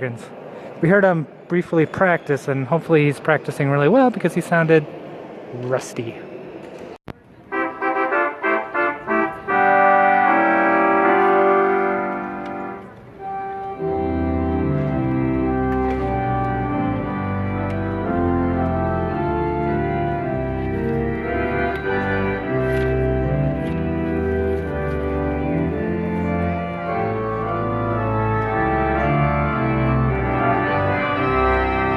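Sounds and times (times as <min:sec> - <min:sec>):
pipe organ chords: 0:07.4 - 0:31.9
deep pedal bass notes: 0:13.6 - 0:31.9.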